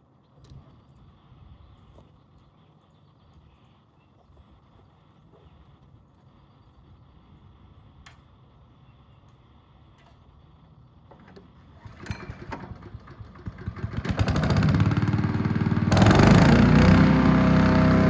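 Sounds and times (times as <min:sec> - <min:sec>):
click: 0:08.0 - 0:08.2
small petrol engine starting: 0:11.1 - 0:18.0.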